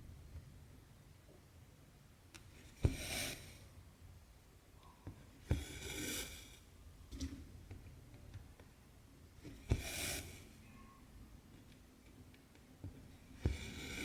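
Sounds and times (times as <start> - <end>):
thread rasping through cloth: 9.4 - 10.5, 13.3 - 14.0.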